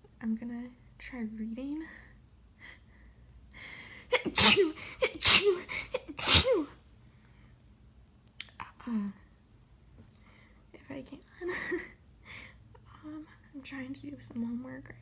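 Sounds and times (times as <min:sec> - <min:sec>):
sharp breath in: 0:03.6 - 0:06.7
woman sneezing: 0:04.0 - 0:06.8.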